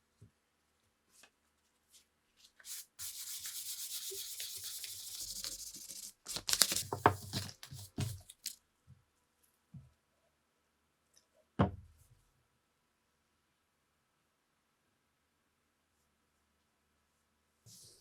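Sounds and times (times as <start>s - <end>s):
hand sanding: 2.7s - 6.8s.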